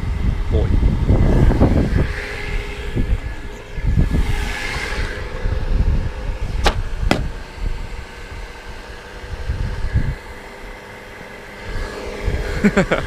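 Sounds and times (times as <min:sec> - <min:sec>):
steady low rumble: 0:00.0 - 0:13.0
sharp cracks: 0:06.6 - 0:07.4.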